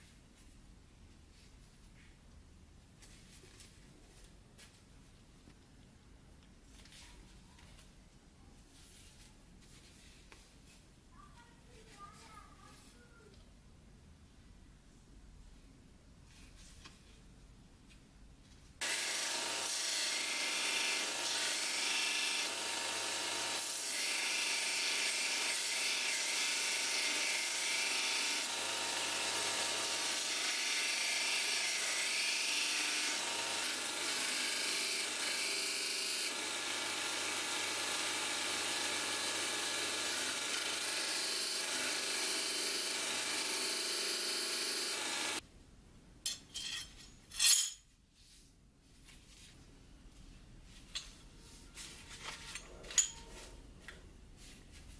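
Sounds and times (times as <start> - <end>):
electric power tool whining: 18.8 - 45.4.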